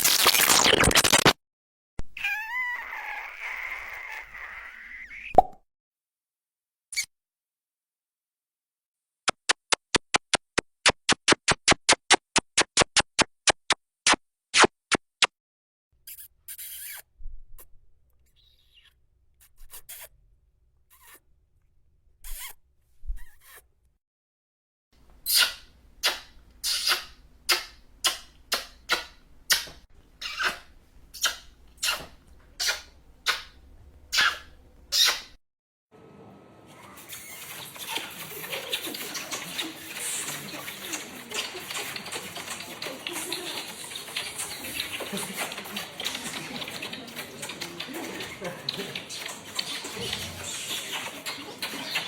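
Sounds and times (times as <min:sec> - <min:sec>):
wet kissing smacks: 0:18.7 - 0:20.1, 0:20.9 - 0:21.2, 0:25.3 - 0:33.6.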